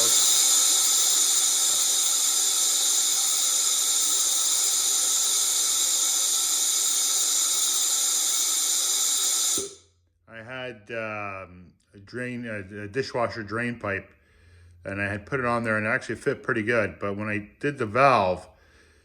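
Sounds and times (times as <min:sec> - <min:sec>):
compressed air hissing from drain valve: 0:00.0 - 0:09.8.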